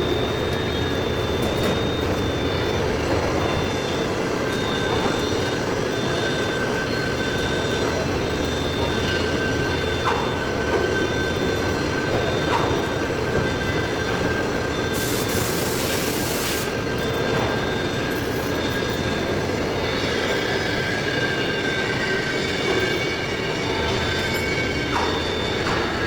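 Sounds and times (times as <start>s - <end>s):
lathe machine drone: 0.0s - 26.0s.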